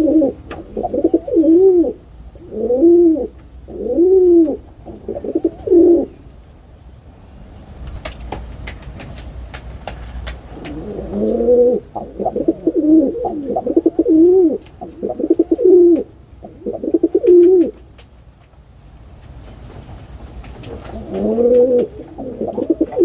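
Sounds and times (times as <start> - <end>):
pigeon cooing: 0.0 - 6.2, 10.5 - 17.8, 20.6 - 23.0.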